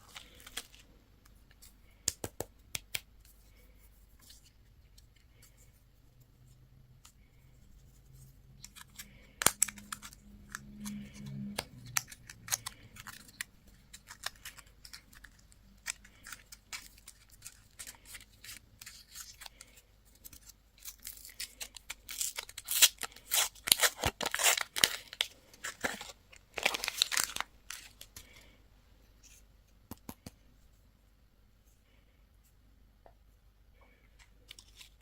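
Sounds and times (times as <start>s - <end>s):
wrapper tearing and rustling: 8.6s - 28.3s
candy wrapper crinkling: 8.6s - 28.5s.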